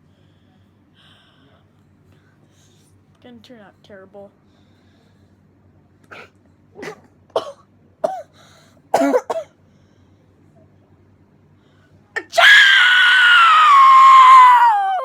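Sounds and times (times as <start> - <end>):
catching breaths: 4.4 - 6.4, 8.3 - 8.9, 9.6 - 10.4, 11.5 - 12.0
fake sneeze cry: 6.1 - 7.1.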